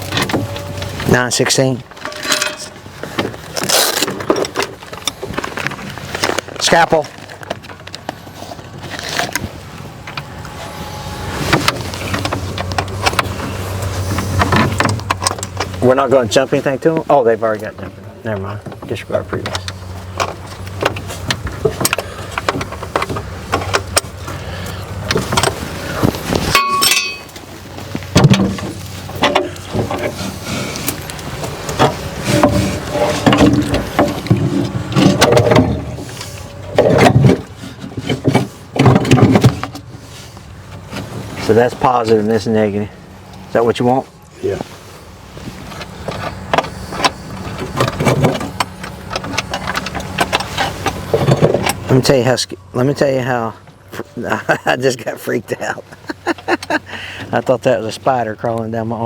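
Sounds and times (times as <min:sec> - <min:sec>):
metal parts scraping: 0:00.0 - 0:15.9, 0:19.5 - 0:39.6
engine humming: 0:00.0 - 0:59.0
tools knocking and clinking: 0:02.0 - 0:02.8, 0:26.5 - 0:27.4.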